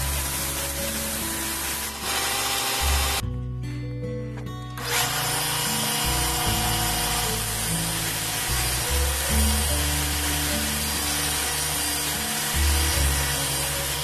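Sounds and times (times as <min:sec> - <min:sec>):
power tool hissing: 0:00.0 - 0:03.2, 0:04.8 - 0:14.0
background music with bass notes: 0:02.8 - 0:14.0.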